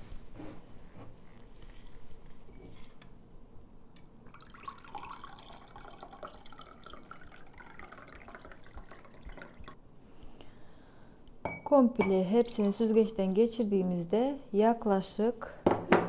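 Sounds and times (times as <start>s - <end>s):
liquid trickling into a glass: 4.2s - 9.8s.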